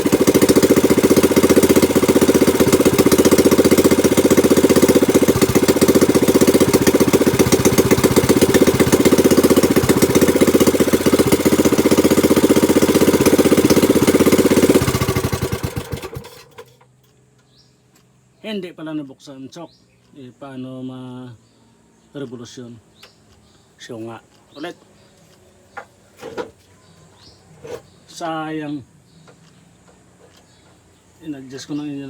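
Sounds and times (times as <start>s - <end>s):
small boat engine sputtering: 0.0s - 16.8s.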